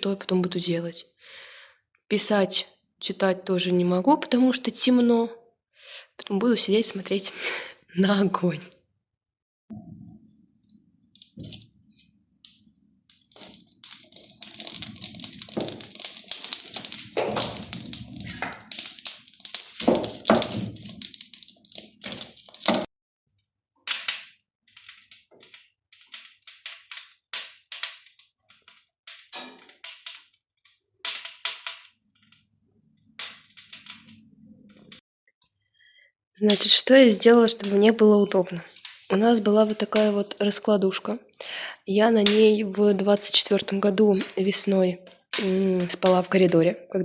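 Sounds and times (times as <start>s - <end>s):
wood fire crackling and popping: 10.1s - 22.9s, 23.8s - 35.0s, 36.4s - 40.6s, 41.2s - 46.6s.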